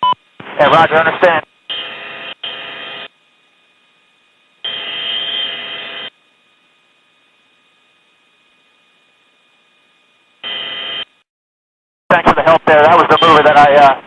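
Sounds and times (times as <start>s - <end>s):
faint steady whine: 0.0s - 11.3s, 12.1s - 14.0s
radio hiss: 0.1s - 6.1s, 12.1s - 14.0s.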